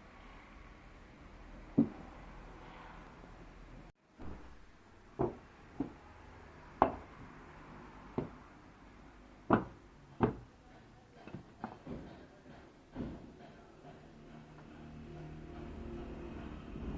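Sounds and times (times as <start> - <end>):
sharp wooden knocks: 1.8 - 2.1, 5.2 - 6.0, 8.1 - 8.4, 9.4 - 10.5, 11.2 - 14.0.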